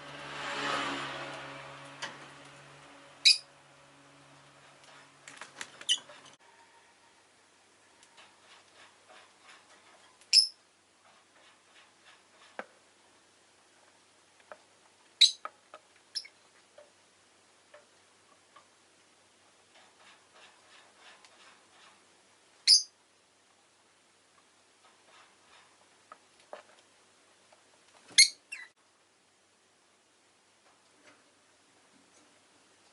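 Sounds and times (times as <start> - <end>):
lovebird chirping: 3.2 - 3.5, 10.3 - 10.6, 15.2 - 15.5, 16.1 - 16.4, 22.6 - 23.0, 28.1 - 28.8.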